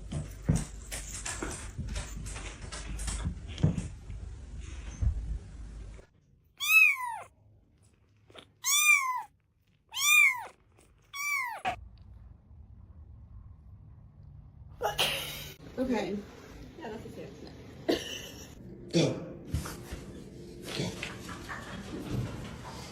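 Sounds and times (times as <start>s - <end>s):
cat meowing: 6.6s - 7.3s, 8.6s - 9.3s, 9.9s - 11.8s.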